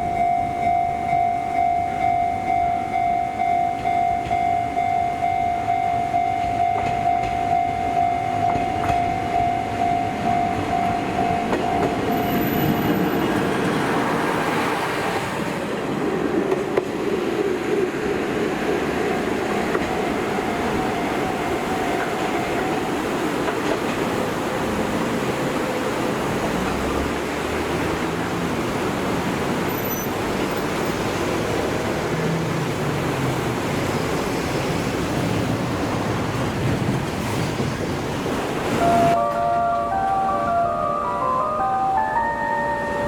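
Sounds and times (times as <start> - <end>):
diesel railcar rumbling on track: 0.0 - 43.0
music: 38.9 - 43.0.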